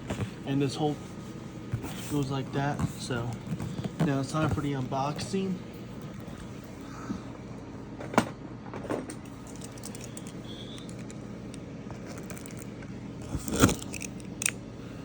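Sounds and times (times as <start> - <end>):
cardboard scraping: 0.0 - 6.7
low hum: 0.0 - 15.0.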